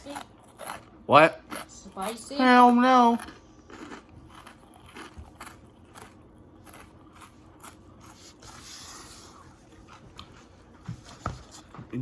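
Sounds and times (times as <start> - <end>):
person chewing: 0.0 - 10.6
crunching clicks and mouth noises: 3.2 - 8.2.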